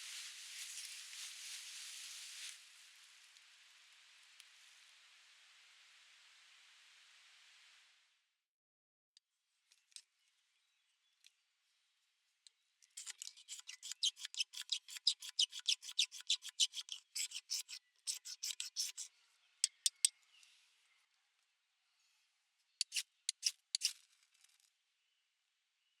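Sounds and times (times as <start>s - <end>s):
rapid rasping strokes: 13.0s - 19.1s.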